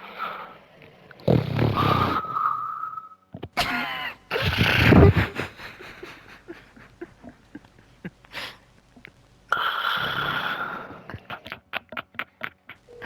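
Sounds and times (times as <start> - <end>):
man snoring: 1.2 - 2.4, 9.5 - 11.3
faint breath: 8.3 - 8.8.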